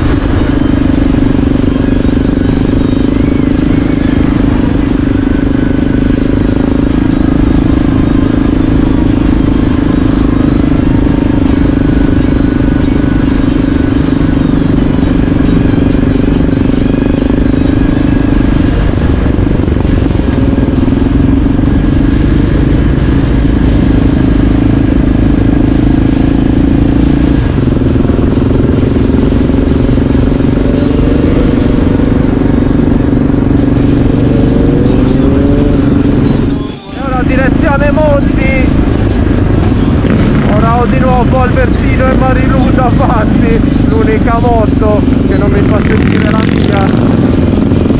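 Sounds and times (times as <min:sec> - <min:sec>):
wind rush: 0:00.0 - 0:00.8
motorcycle engine cruising: 0:00.0 - 0:47.9.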